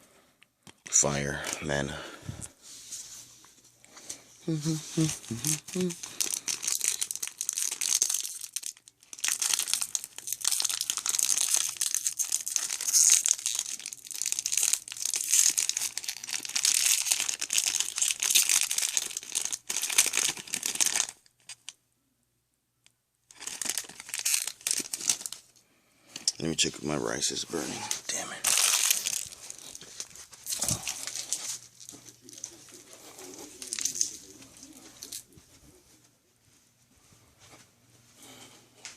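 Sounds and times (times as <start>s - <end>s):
foil wrapper crinkling: 5.0s - 21.8s, 23.3s - 26.4s, 27.9s - 35.4s
wrapper tearing: 5.0s - 21.8s, 23.3s - 25.5s, 27.9s - 35.2s.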